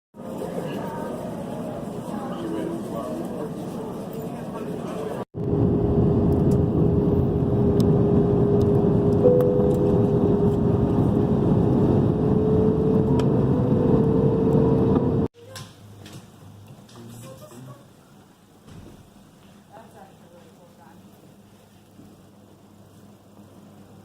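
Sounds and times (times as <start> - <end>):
higher whine: 5.4 - 15.3
steady whine: 5.4 - 15.3
vehicle running with rushing noise: 5.4 - 15.3.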